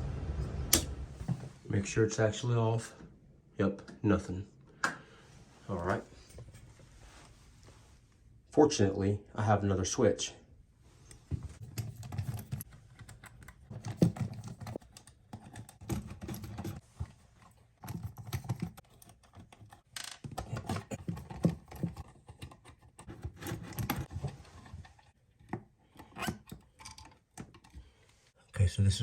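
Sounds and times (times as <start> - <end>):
plastic and metal clicks and scrapes: 11.6 - 28.2.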